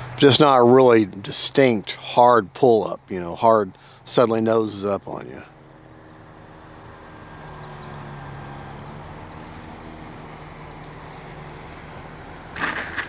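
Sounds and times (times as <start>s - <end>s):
model plane motor humming: 5.6s - 13.0s.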